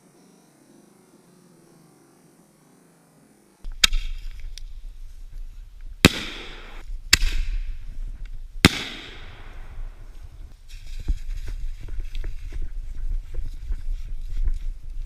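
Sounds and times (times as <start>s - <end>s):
fireworks crackling hiss: 3.9s - 12.6s
fireworks bangs: 6.0s - 7.8s, 8.6s - 10.5s.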